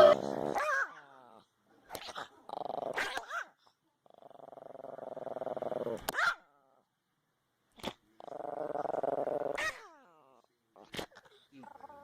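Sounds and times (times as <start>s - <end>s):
small dog growling: 0.0s - 3.2s, 4.0s - 6.1s, 7.8s - 12.0s
dog barking: 6.1s - 6.5s.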